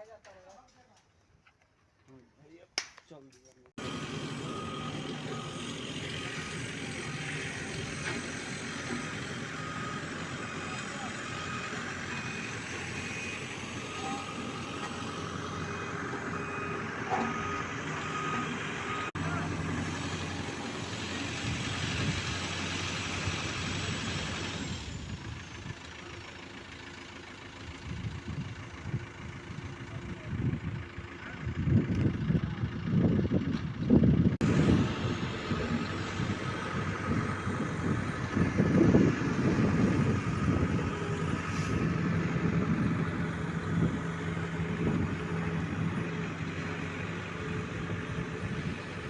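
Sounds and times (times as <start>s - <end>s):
traffic noise: 3.3s - 49.0s
large vehicle engine running: 3.8s - 49.0s
faint high beep: 9.6s - 14.9s.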